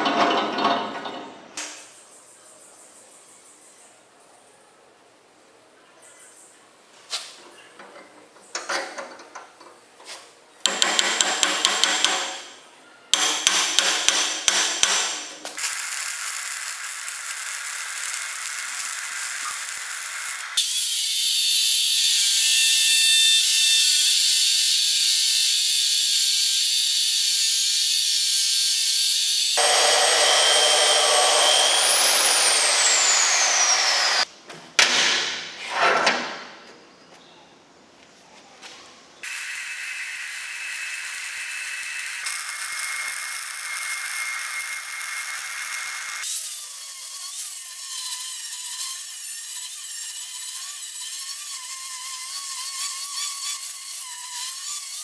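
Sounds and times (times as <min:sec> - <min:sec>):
high steady tool noise: 0:13.2 - 0:34.3, 0:39.2 - 0:55.0
cutting or grinding noise: 0:28.6 - 0:34.3
power tool whine winding down: 0:29.2 - 0:34.3.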